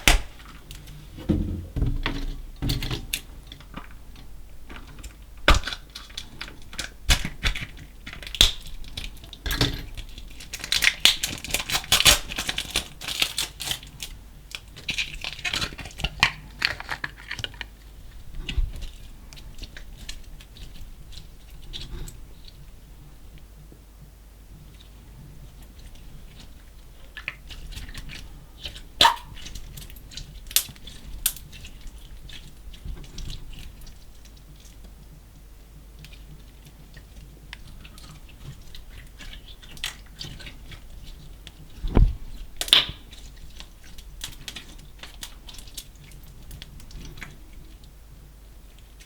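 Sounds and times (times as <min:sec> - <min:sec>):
sharp slime pops: 0:00.0 - 0:00.4
slime squished by hand: 0:00.0 - 0:00.7.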